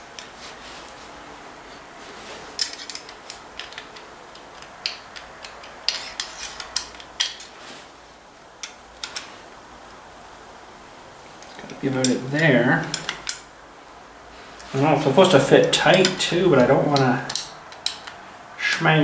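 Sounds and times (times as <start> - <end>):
sharp clicks: 14.6 - 18.8.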